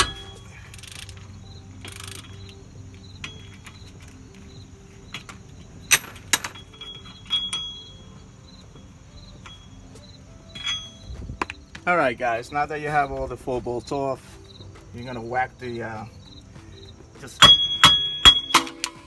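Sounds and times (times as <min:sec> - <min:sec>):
metal socket clinking: 0:00.0 - 0:04.5, 0:05.1 - 0:08.0, 0:10.5 - 0:11.6, 0:17.4 - 0:19.0
crickets chirping: 0:00.0 - 0:19.0.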